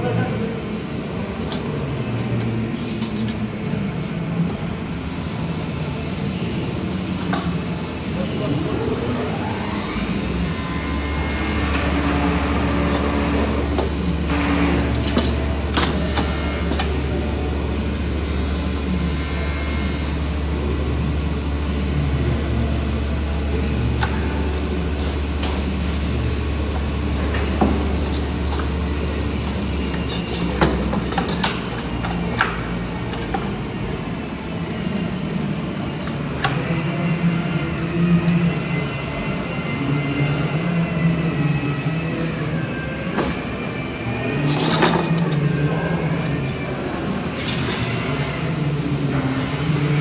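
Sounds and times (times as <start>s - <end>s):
low mechanical rumble: 3.4s - 39.2s
machine humming: 5.0s - 50.0s.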